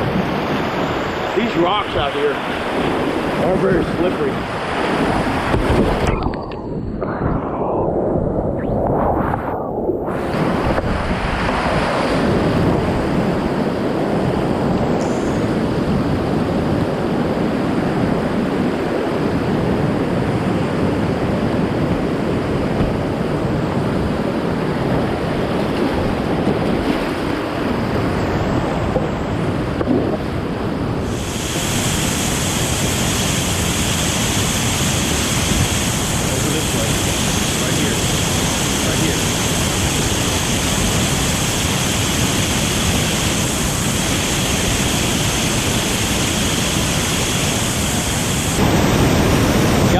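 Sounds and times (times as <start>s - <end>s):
whitewater rapids rushing: 0.0s - 6.1s, 21.5s - 49.9s
wind buffeting microphone: 0.0s - 49.9s.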